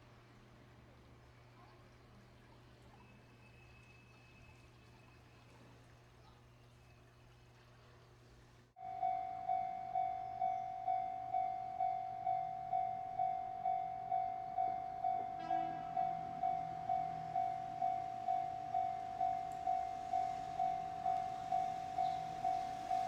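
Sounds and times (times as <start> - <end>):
level crossing warning bell: 8.8 - 23.0
short second tone: 15.0 - 19.8.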